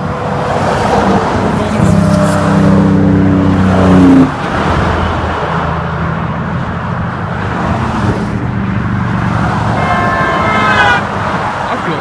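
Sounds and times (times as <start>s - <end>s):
highway traffic noise: 0.0s - 12.0s
truck air horn blowing: 9.7s - 11.2s.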